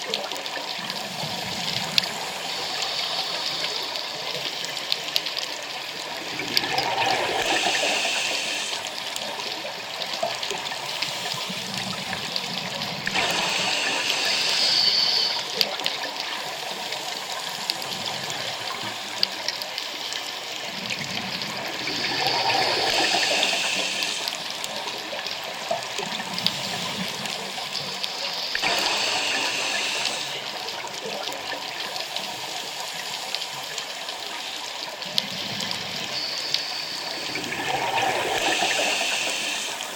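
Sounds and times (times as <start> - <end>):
steady underwater hiss: 0.0 - 39.9
diver breathing through regulator: 6.4 - 9.1, 13.0 - 15.6, 21.7 - 24.5, 28.5 - 30.6, 36.2 - 39.9.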